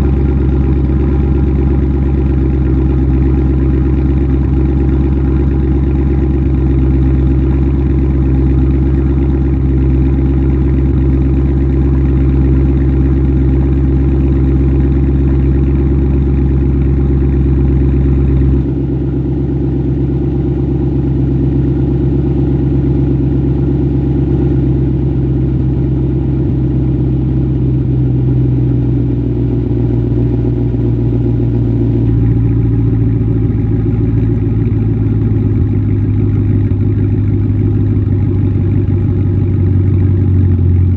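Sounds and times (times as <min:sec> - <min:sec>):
car engine idling: 0:00.0 - 0:40.9.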